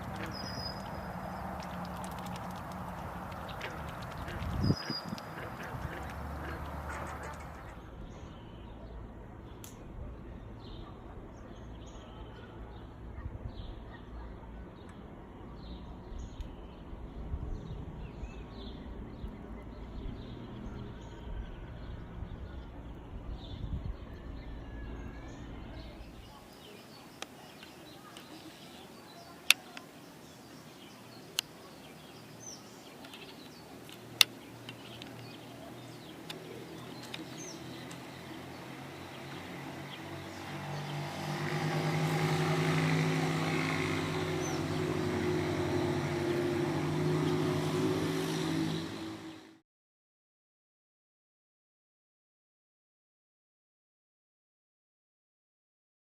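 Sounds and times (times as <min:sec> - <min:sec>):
sharp clicks: 0:00.0 - 0:07.7, 0:33.0 - 0:35.5, 0:36.2 - 0:38.1
small birds chirping: 0:00.0 - 0:49.6.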